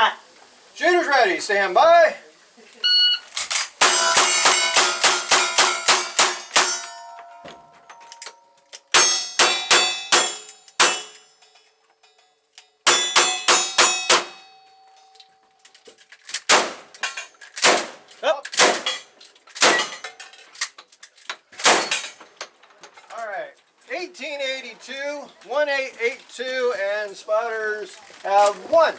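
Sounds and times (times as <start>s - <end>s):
shot timer beep: 2.8s - 3.2s
steel targets clanging: 3.3s - 15.8s, 16.4s - 20.8s, 21.6s - 22.4s
rapid gunshots: 3.8s - 6.8s.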